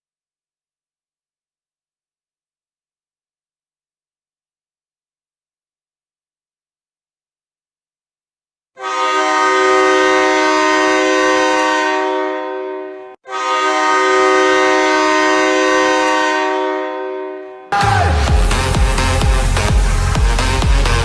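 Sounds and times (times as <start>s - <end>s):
goal horn blasts: 8.8s - 19.0s.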